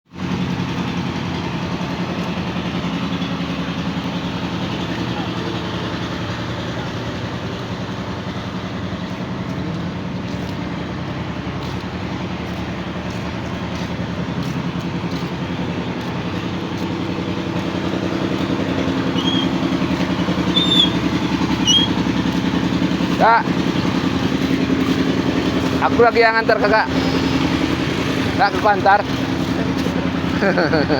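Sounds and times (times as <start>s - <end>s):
motorcycle engine running: 0.1s - 30.9s
short high chirps: 19.2s - 19.6s, 20.5s - 22.0s.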